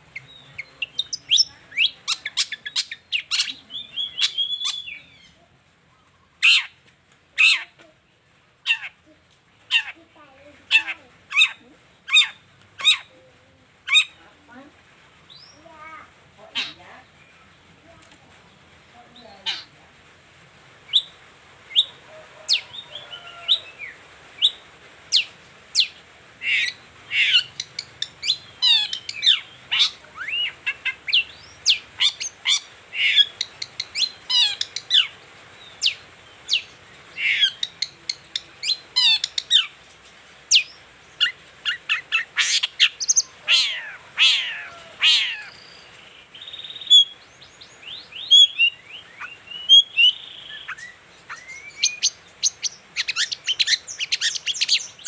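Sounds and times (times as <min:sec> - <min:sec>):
bird singing chirps and whistles: 0:00.3 - 0:05.3, 0:47.8 - 0:55.0.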